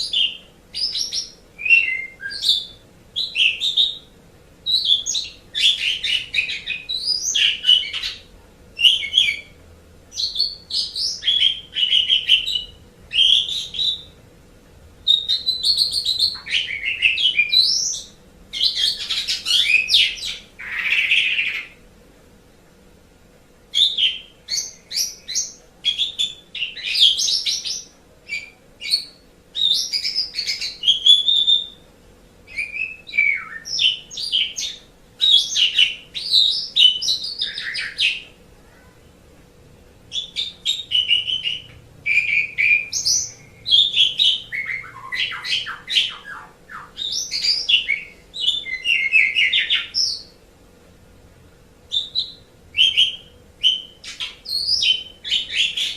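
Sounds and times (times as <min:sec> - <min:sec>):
starling whistling and chattering: 0:00.0 - 0:04.1, 0:15.1 - 0:21.8, 0:40.1 - 0:50.3, 0:51.9 - 0:55.9.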